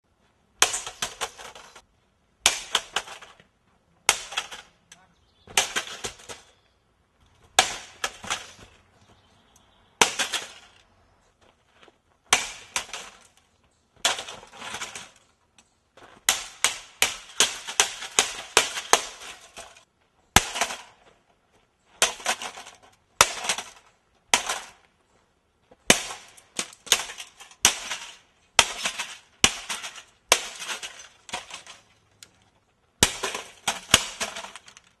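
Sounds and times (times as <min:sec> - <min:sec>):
bat smashing objects: 0:05.5 - 0:06.5.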